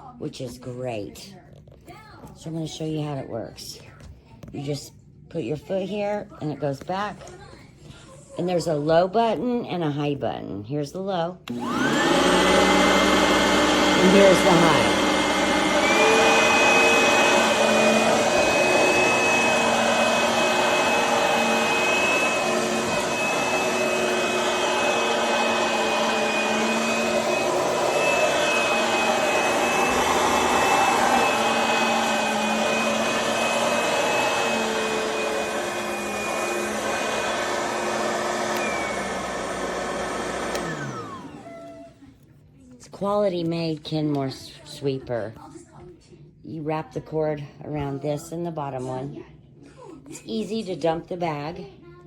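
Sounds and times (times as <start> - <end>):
vacuum cleaner motor whine: 11.5 - 42.0.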